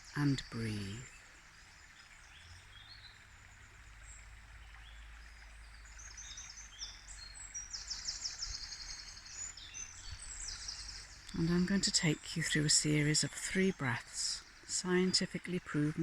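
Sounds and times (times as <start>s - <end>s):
songbirds singing: 0.0s - 16.0s
stream babbling over rocks: 0.0s - 16.0s.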